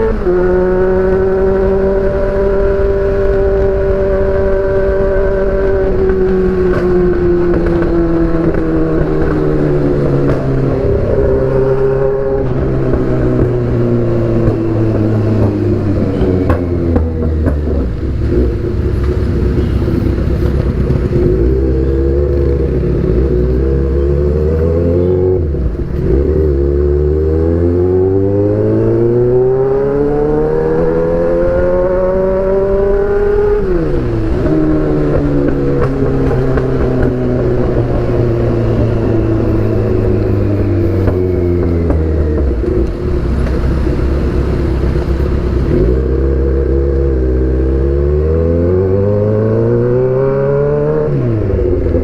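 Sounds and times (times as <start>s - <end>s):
motorcycle engine revving: 0.0s - 52.0s.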